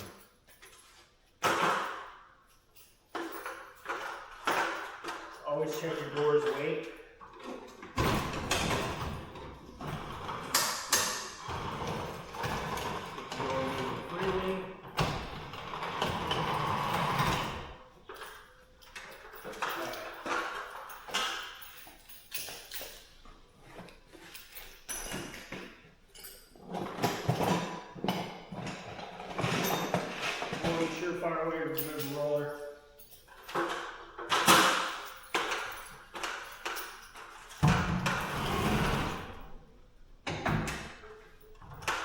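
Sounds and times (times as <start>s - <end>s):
metallic clinks and taps: 0.0s - 7.9s, 18.0s - 28.7s, 29.4s - 37.8s
metal clattering and rattling: 3.1s - 32.4s
garage door rollers rumbling: 7.9s - 17.8s, 37.4s - 39.5s.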